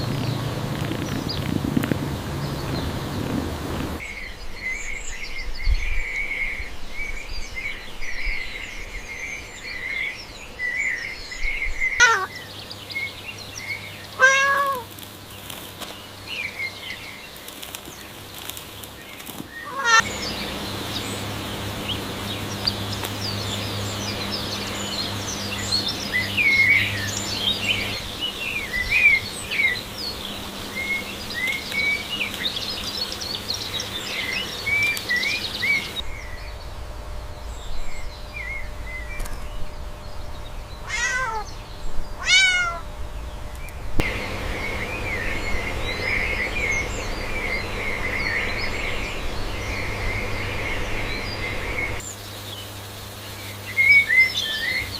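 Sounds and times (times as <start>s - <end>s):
small birds chirping: 0.0s - 54.9s
cat meowing: 12.0s - 12.3s, 14.2s - 14.9s, 19.7s - 20.0s, 40.8s - 41.5s, 42.2s - 42.9s.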